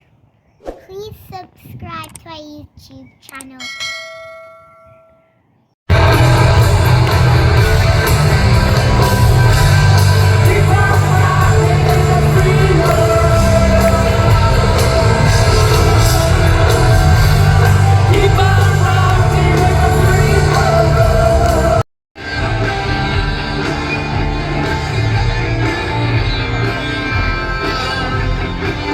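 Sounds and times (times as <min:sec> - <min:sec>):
live rock band with singer: 0:05.9 - 0:28.9.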